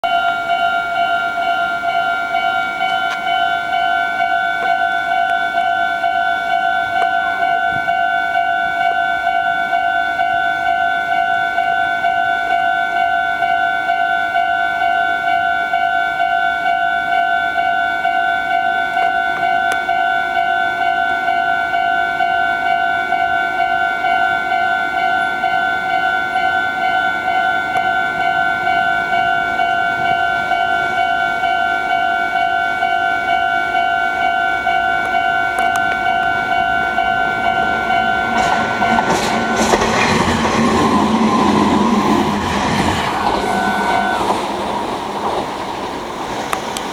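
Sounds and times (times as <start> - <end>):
level crossing warning bells: 0.0 - 46.9
wheel and rail noise: 0.0 - 46.9
train rushing past: 22.6 - 46.9.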